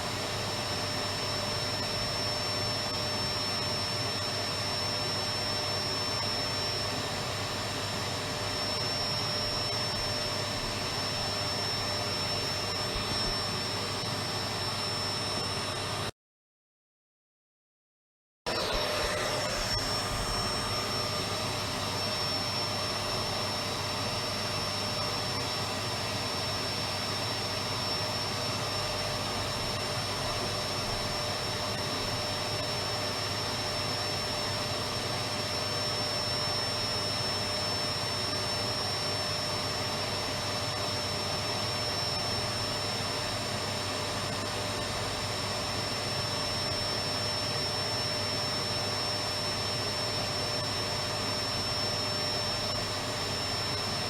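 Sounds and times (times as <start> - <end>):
vacuum cleaner running: 0.0 - 16.1, 18.5 - 54.0.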